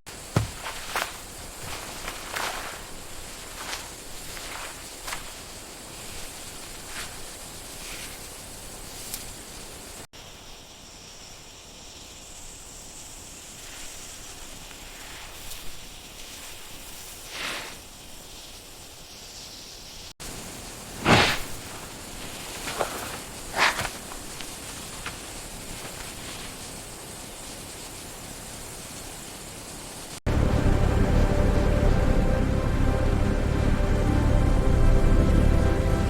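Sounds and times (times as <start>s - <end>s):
outdoor background hiss: 0.0s - 36.0s
faint rustles: 0.1s - 9.8s, 20.8s - 27.5s.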